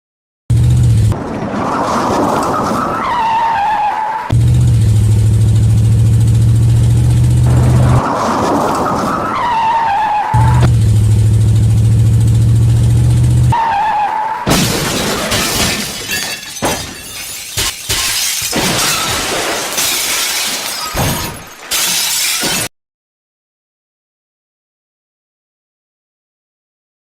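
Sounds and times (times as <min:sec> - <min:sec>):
steady low drone: 0:04.4 - 0:08.0
crashing and shattering glass: 0:14.5 - 0:22.7.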